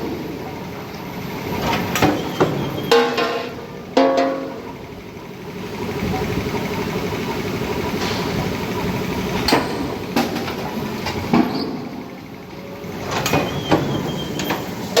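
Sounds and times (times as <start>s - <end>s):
sharp metallic clanks: 1.8s - 4.8s.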